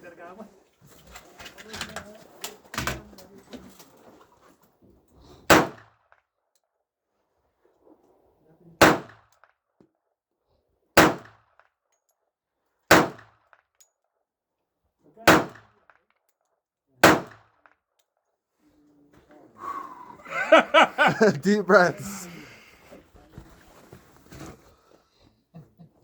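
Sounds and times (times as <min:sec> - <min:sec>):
pistol shots: 0:05.5 - 0:05.8, 0:08.8 - 0:09.2, 0:11.0 - 0:11.3, 0:12.9 - 0:13.3, 0:15.3 - 0:15.6, 0:17.0 - 0:17.4.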